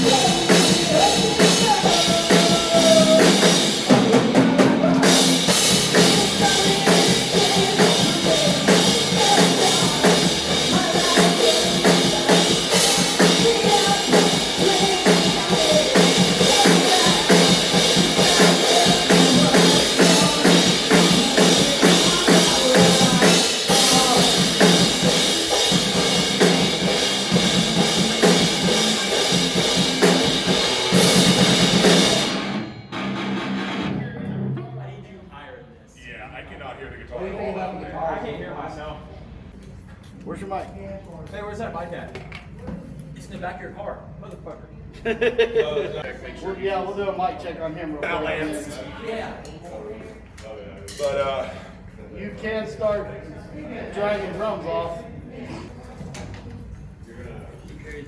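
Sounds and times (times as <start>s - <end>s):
live rock band playing: 0.0s - 34.8s.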